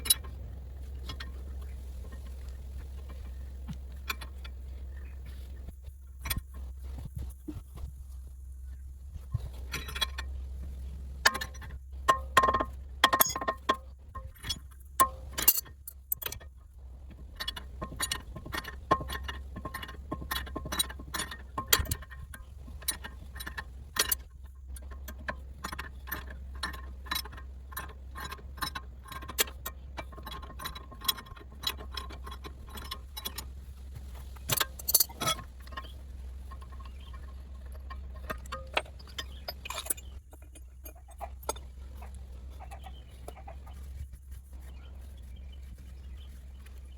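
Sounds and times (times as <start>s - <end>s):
low steady hum: 0.0s - 46.9s
metal tool clicks and clinks: 11.2s - 16.4s, 34.4s - 35.9s, 36.6s - 43.5s
ringing metal knocks: 11.2s - 16.4s, 17.3s - 33.6s, 34.2s - 43.9s.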